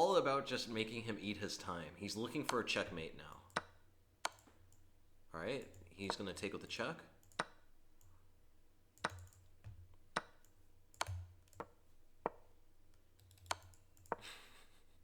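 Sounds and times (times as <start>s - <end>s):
computer mouse clicking: 2.3s - 4.9s, 5.6s - 6.5s, 7.2s - 8.3s, 9.0s - 14.4s.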